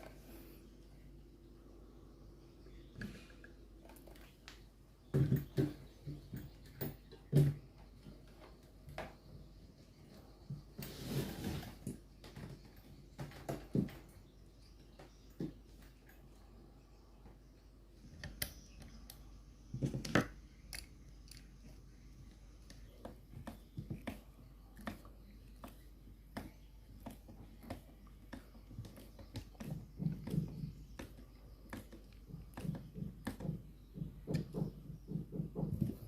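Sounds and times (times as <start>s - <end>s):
dull thumps: 22.6s - 36.0s.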